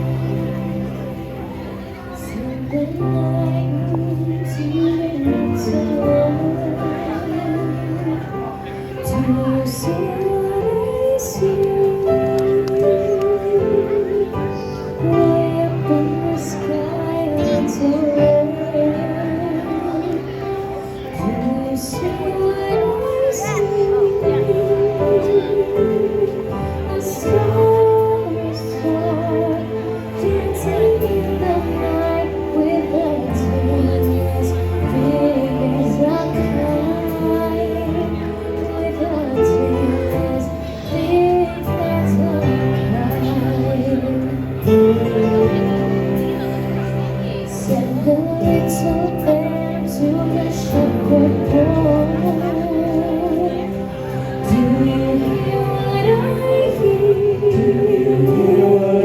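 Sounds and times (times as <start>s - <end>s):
women and children singing: 2.1s - 45.8s, 47.3s - 59.0s
bass accompaniment: 23.5s - 59.0s.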